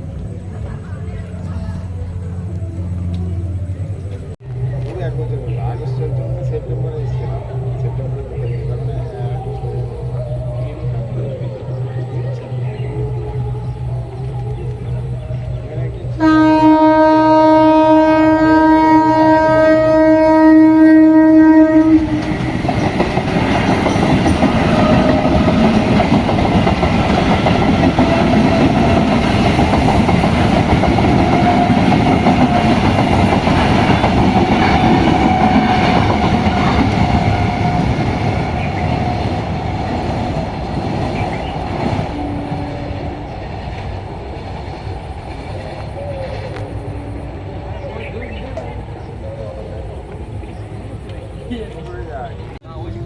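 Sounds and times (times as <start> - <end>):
train wheels clattering on rails: 0.0 - 49.2
train horn blast: 12.9 - 22.7, 31.1 - 40.1.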